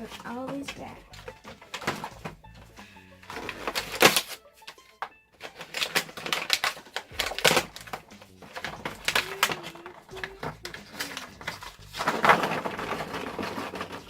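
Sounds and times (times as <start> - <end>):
plastic clicks and clatters: 0.0 - 2.3, 3.2 - 14.0.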